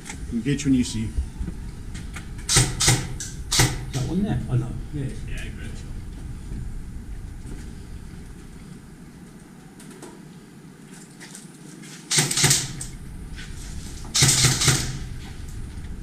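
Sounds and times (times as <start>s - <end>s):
airsoft gun shots: 2.5s - 4.0s, 12.1s - 12.9s, 14.1s - 15.1s.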